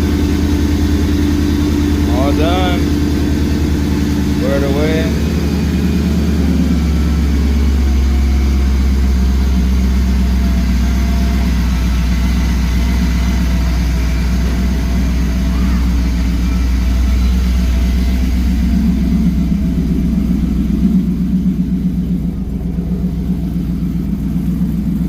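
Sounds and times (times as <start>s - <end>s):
truck engine idling: 0.0s - 25.0s.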